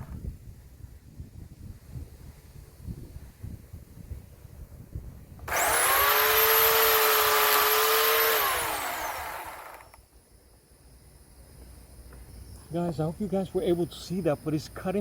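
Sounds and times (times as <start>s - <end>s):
electric chainsaw whining: 5.4s - 10.0s.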